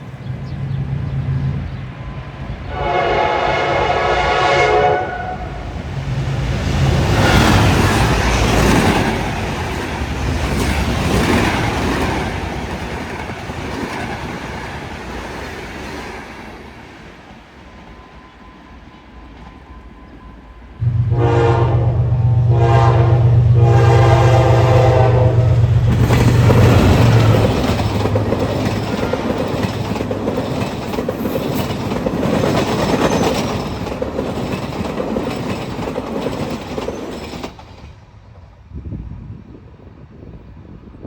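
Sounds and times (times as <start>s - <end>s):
train wheels rushing: 0.0s - 38.8s
train horn blasts: 2.6s - 5.7s, 20.8s - 27.7s
locomotive engine drone: 18.3s - 30.8s.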